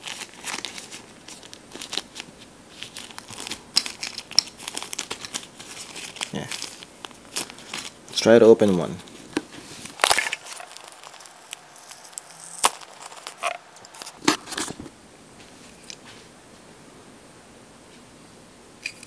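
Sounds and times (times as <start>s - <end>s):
crinkly packaging rustles: 0.0s - 14.9s
packaging clicks: 0.2s - 8.0s, 9.4s - 14.7s.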